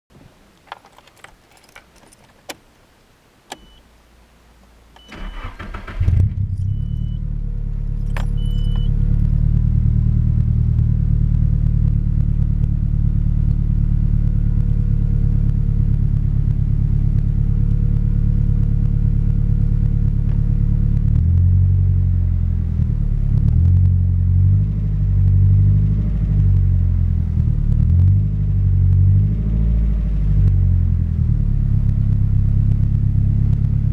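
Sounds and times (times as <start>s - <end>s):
car engine idling: 0.3s - 24.4s
clicks: 3.5s - 3.8s
short beeps: 3.5s - 3.8s, 6.5s - 7.3s, 8.0s - 9.0s
engine revving: 5.1s - 7.2s.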